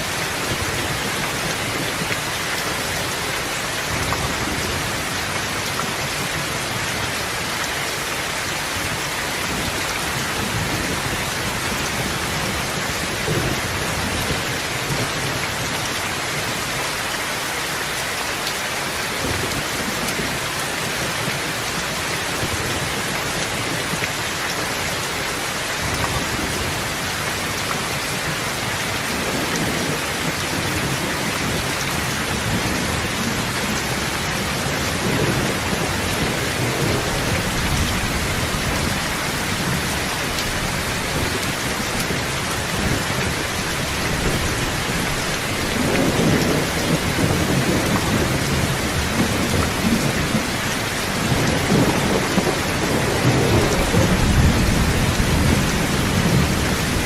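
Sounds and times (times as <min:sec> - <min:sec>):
steady rain: 0:00.0 - 0:57.0
low rolling thunder: 0:29.1 - 0:57.0.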